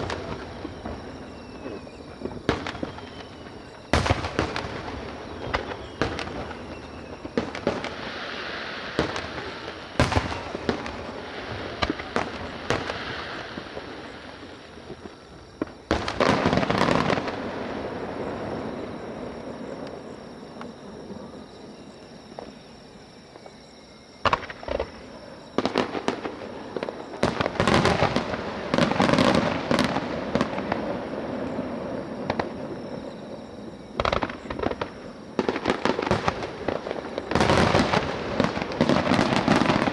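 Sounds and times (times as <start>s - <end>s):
fireworks bangs: 0.0s - 20.7s, 24.2s - 33.2s, 33.9s - 39.9s
fireworks crackling: 0.0s - 20.7s, 24.2s - 39.9s.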